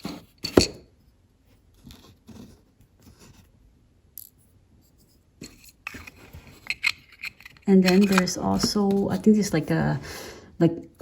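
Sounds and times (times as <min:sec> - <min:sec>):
rustling of toy pieces: 0:05.4 - 0:09.8
plastic pieces clicking: 0:05.8 - 0:09.0.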